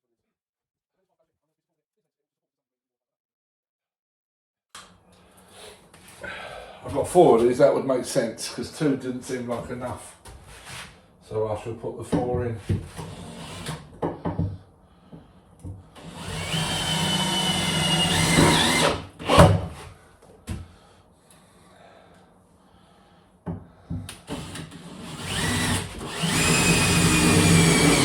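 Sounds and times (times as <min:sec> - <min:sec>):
power drill driving screws: 0:13.0 - 0:13.9, 0:16.0 - 0:19.6, 0:24.3 - 0:28.0.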